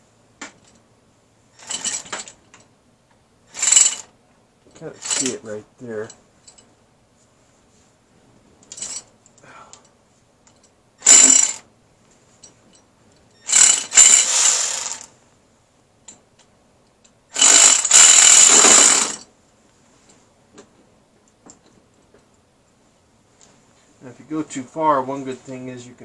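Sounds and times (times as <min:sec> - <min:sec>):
cordless ratchet bursts: 0:01.6 - 0:02.3, 0:03.5 - 0:04.1, 0:04.8 - 0:05.5, 0:11.0 - 0:11.7, 0:13.4 - 0:15.1, 0:17.3 - 0:19.2.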